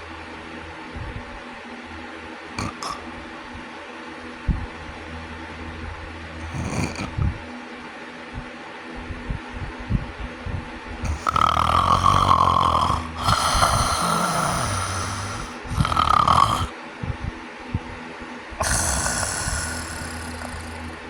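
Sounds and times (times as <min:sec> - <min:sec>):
person snoring: 0:02.6 - 0:03.2, 0:06.4 - 0:07.4, 0:11.0 - 0:17.3, 0:18.6 - 0:21.0.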